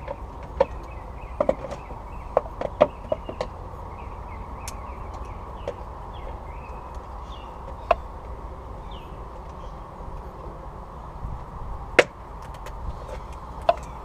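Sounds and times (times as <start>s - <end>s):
low background rumble: 0.0s - 14.0s
faint bird chirps: 0.1s - 8.1s, 8.8s - 9.9s.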